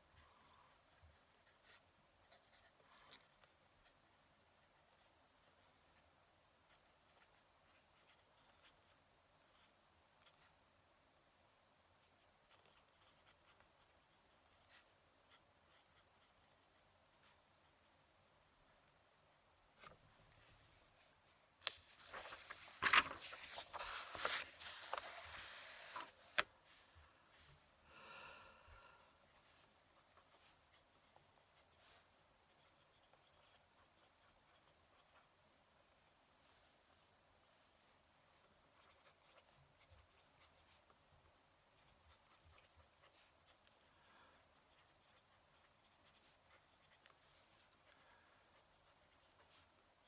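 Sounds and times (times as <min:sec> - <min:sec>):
rustling with small knocks: 0:18.6 - 0:27.8
pen nib scratching paper: 0:29.3 - 0:35.4, 0:38.3 - 0:43.9, 0:44.5 - 0:50.0.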